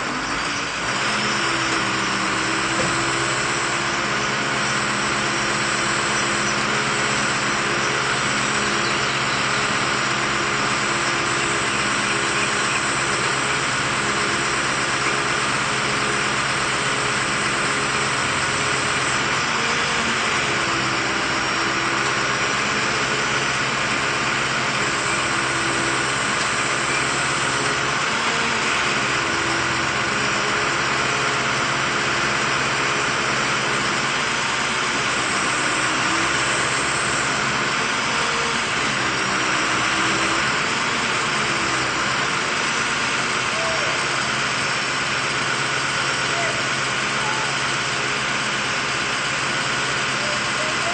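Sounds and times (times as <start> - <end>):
engine running steadily: 0.0 - 50.9.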